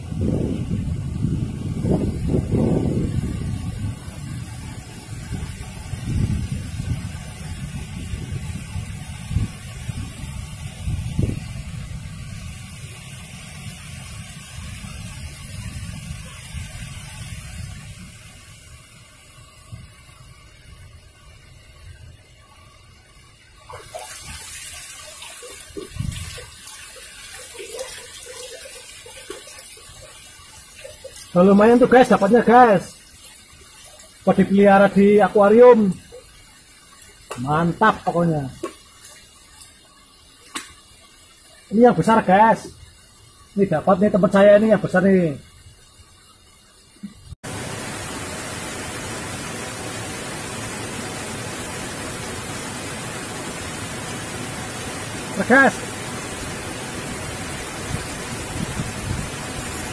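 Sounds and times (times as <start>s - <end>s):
river water splashing and running: 0.0s - 59.9s
river water rushing over rocks: 47.5s - 59.9s.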